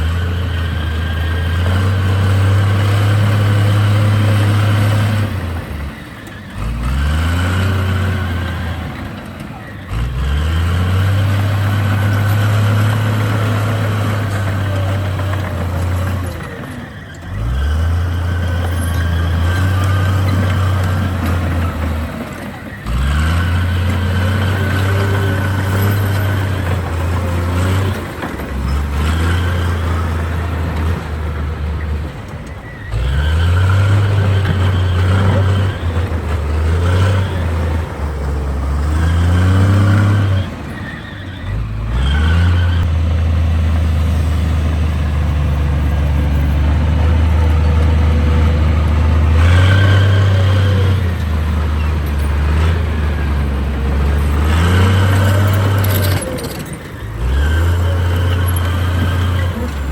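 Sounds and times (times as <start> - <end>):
heavy diesel engine revving: 0.0 - 59.9.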